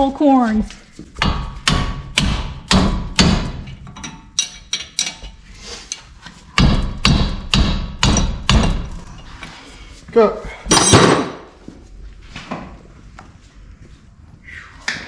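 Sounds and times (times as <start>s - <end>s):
hammer striking metal: 1.2s - 5.2s, 6.6s - 8.9s, 10.7s - 11.5s.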